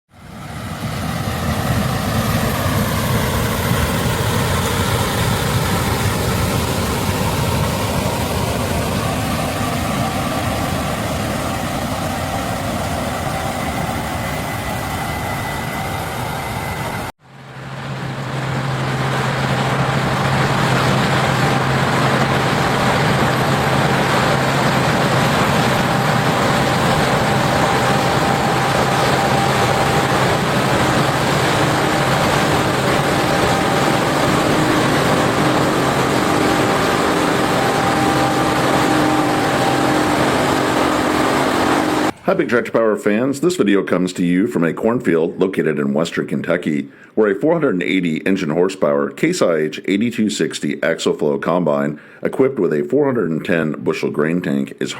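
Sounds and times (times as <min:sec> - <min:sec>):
combine harvester running: 0:00.1 - 0:42.5.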